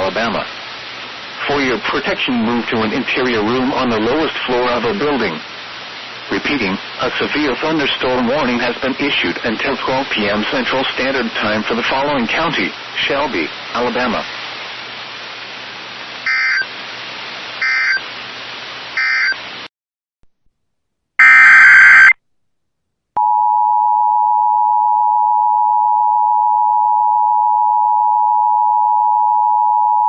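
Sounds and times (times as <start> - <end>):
radio hiss: 0.0 - 19.7
two-tone attention signal: 16.3 - 16.6, 17.6 - 18.0, 21.2 - 22.2.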